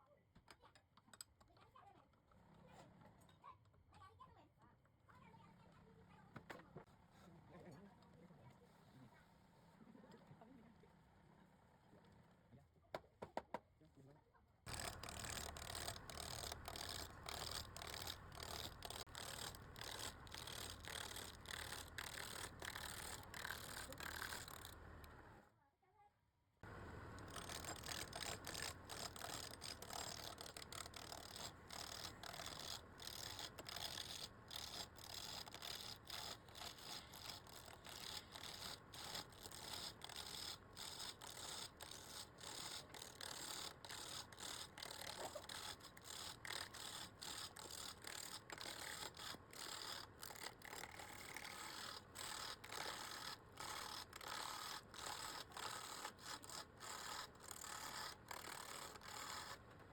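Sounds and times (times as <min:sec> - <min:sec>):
rapid hand scrubbing strokes: 0:14.7 - 0:25.1, 0:27.0 - 0:59.6.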